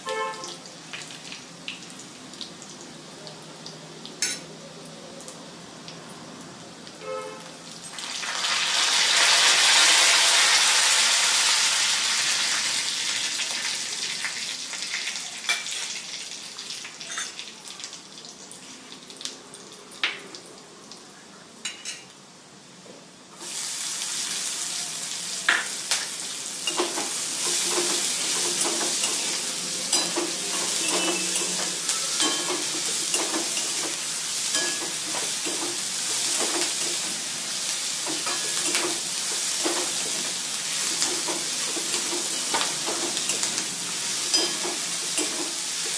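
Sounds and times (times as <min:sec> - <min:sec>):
food sizzling in hot oil: 0:00.0 - 0:04.6, 0:07.6 - 0:20.7, 0:23.3 - 0:45.9
spoon scraping a pan: 0:26.6 - 0:37.1.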